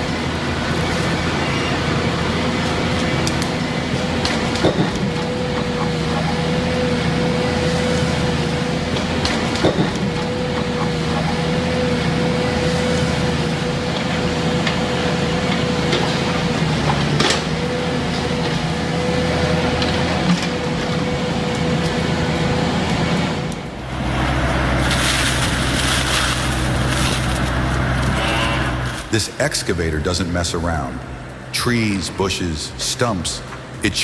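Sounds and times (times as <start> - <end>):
deep engine with loud hiss: 0.0 - 34.0
heavy machine engine whining: 0.0 - 34.0
wood cracking: 23.8 - 30.4.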